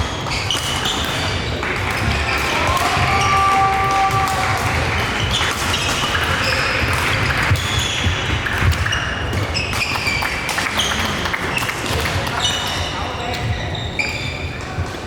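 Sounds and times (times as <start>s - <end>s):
sports shoes squeaking on floor: 0.0s - 2.4s, 5.3s - 11.6s, 12.3s - 14.7s.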